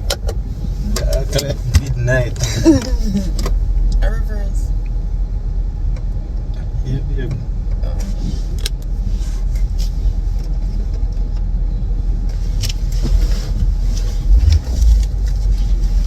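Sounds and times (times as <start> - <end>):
car engine rumble: 0.0 - 16.0.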